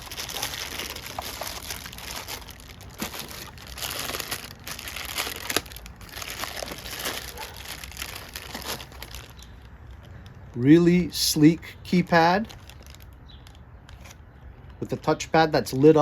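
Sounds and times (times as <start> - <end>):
plastic packaging crinkling: 0.0 - 10.3, 11.9 - 14.2.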